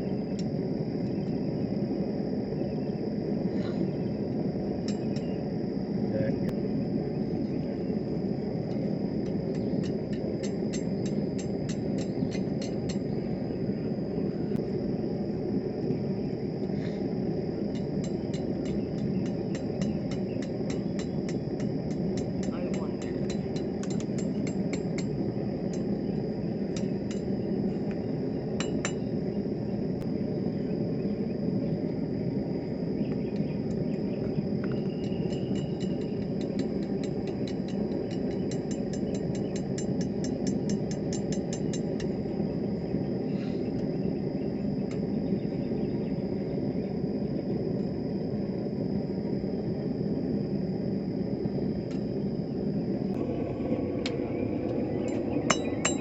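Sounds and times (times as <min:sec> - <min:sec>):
forge burner roaring: 0:00.0 - 0:56.0
hammer striking steel on anvil: 0:55.1 - 0:56.0.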